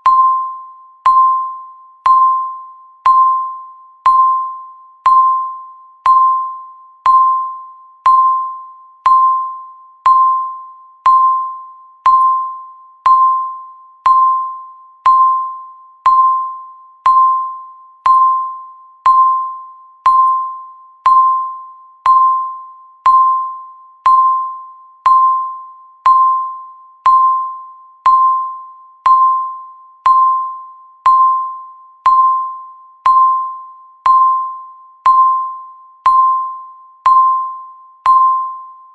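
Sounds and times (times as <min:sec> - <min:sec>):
countdown timer beeps: 0:00.0 - 0:38.9.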